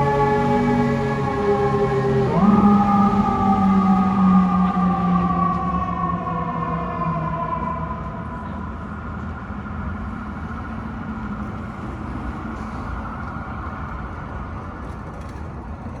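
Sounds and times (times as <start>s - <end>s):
heavy vehicle engine rumbling: 0.0s - 6.9s, 7.7s - 16.0s
fire truck siren winding down: 0.0s - 8.8s
street traffic noise: 0.0s - 16.0s.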